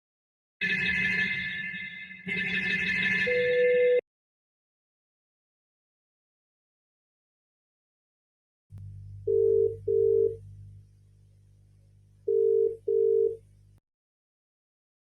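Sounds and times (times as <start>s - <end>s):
short electronic alarm beeps: 0.6s - 4.0s
low hum: 8.7s - 13.8s.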